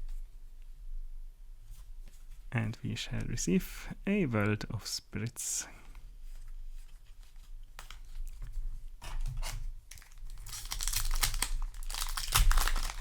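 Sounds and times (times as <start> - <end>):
foil wrapper crinkling and tearing: 7.4 - 8.4, 9.8 - 13.0.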